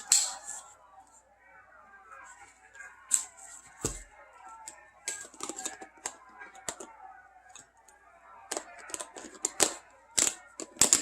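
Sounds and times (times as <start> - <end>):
hard plastic clicks and taps: 8.5 - 11.0.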